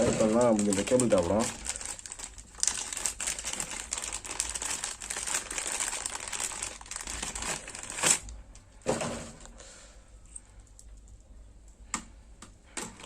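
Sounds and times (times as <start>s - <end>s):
plastic packaging crinkling: 0.0s - 8.4s.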